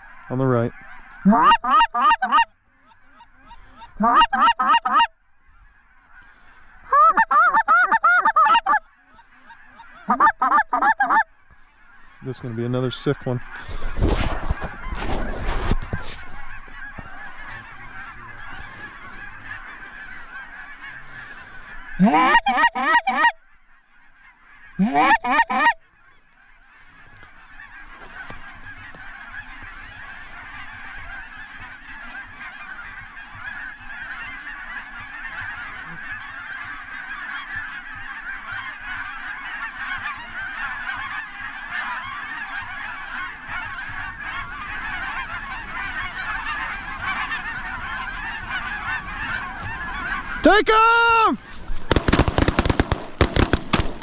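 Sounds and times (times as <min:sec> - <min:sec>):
geese honking: 0:00.0 - 0:54.0.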